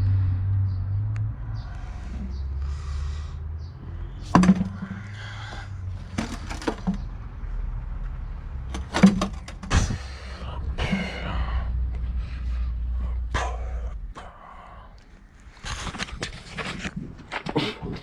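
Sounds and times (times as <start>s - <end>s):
sharp knocks and clatters: 4.2s - 7.2s, 8.7s - 10.0s.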